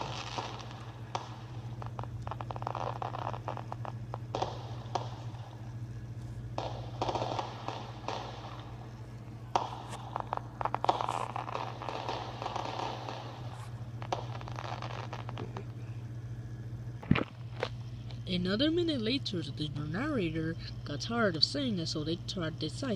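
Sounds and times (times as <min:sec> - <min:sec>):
firework pops: 0:00.0 - 0:05.6, 0:06.3 - 0:15.8, 0:17.0 - 0:18.2
fireworks hissing and crackling: 0:00.0 - 0:18.8.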